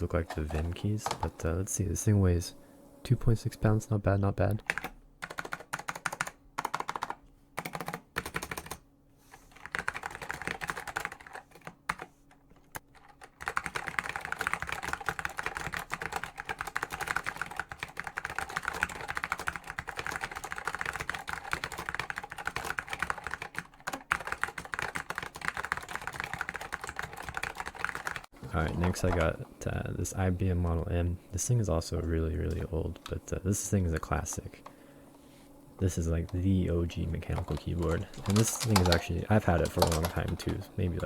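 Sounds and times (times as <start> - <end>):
mechanical keyboard typing: 4.4 - 8.8, 9.5 - 12.1, 12.7 - 29.3, 36.2 - 41.0.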